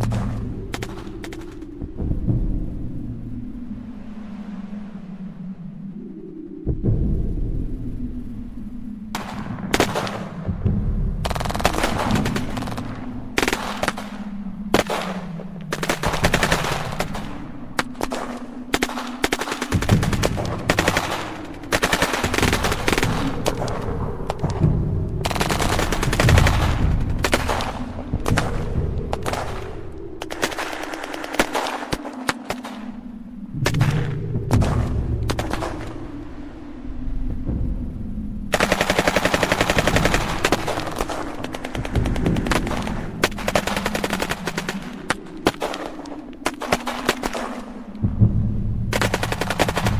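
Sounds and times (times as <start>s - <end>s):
low steady rumble: 0.0s - 18.0s, 19.8s - 31.1s, 33.0s - 46.4s, 47.8s - 49.9s
machine-gun fire bursts: 25.2s - 28.5s, 38.6s - 45.9s, 48.9s - 49.9s.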